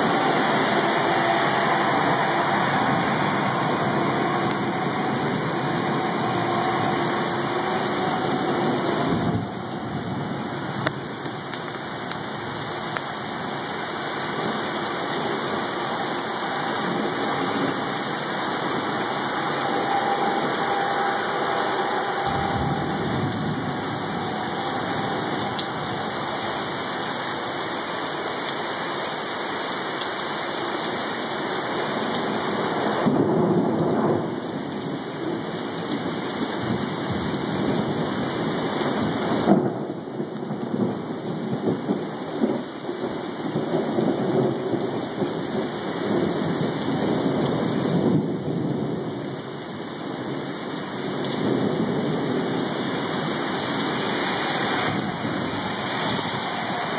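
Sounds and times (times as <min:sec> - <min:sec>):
heavy rain pouring: 0:00.0 - 0:56.9
thunder: 0:15.8 - 0:26.6, 0:33.0 - 0:35.5, 0:39.0 - 0:42.7.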